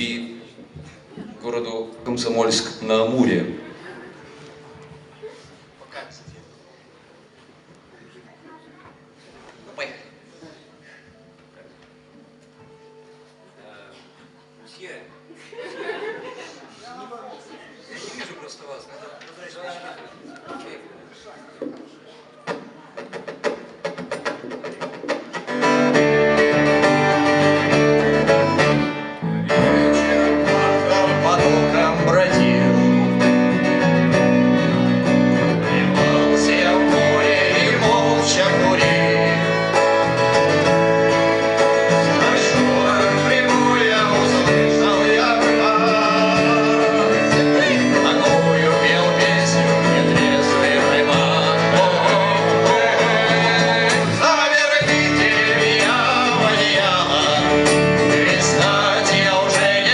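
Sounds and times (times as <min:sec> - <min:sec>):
band playing music: 0:23.1 - 0:59.9.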